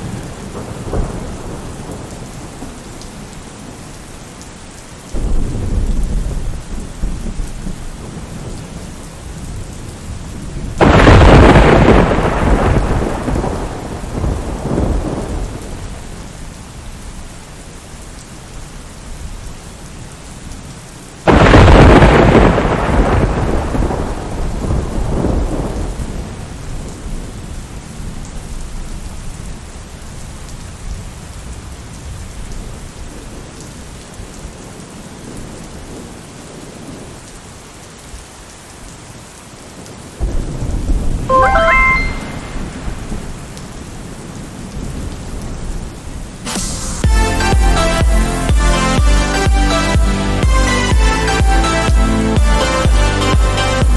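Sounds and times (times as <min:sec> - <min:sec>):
loud thunder claps: 0:00.0 - 0:02.4, 0:05.2 - 0:08.2, 0:10.7 - 0:15.8, 0:21.3 - 0:26.2, 0:40.2 - 0:43.5
thunder rumbling: 0:00.0 - 0:02.6, 0:05.2 - 0:08.5, 0:10.4 - 0:16.1, 0:21.3 - 0:26.4, 0:40.2 - 0:43.9
steady rain: 0:00.0 - 0:53.9.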